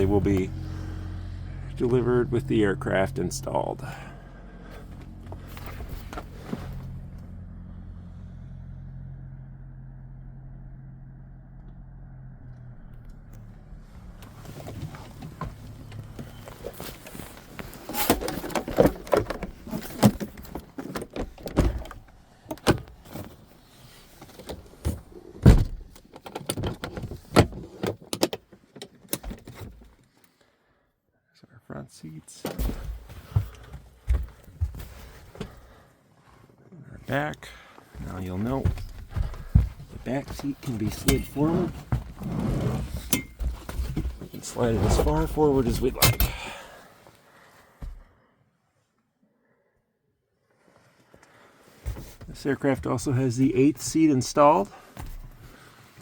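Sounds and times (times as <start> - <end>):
steady low hum: 0.0 - 16.6
knocks and rattles in aircraft cabin: 38.5 - 41.1.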